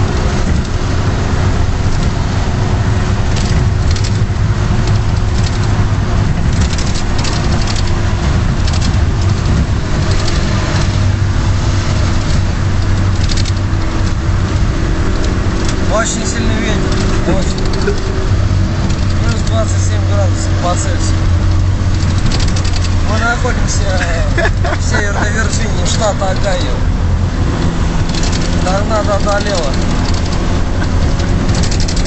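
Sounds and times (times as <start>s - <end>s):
car running with road noise: 0.0s - 32.0s
strong wind buffeting: 0.0s - 32.0s.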